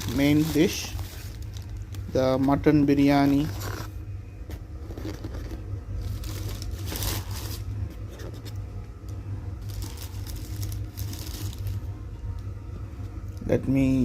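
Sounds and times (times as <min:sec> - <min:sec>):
food containers scraping and crinkling: 0:00.0 - 0:08.7, 0:09.6 - 0:11.9
steady low hum: 0:00.0 - 0:14.0.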